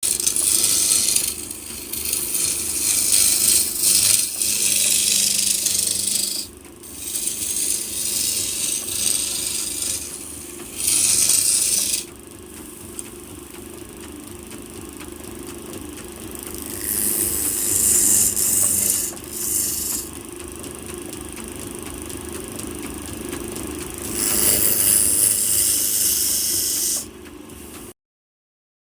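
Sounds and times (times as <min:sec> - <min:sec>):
tool scraping wood: 0:00.0 - 0:13.2, 0:16.5 - 0:20.2, 0:23.9 - 0:27.9
steady low hum: 0:00.0 - 0:27.9.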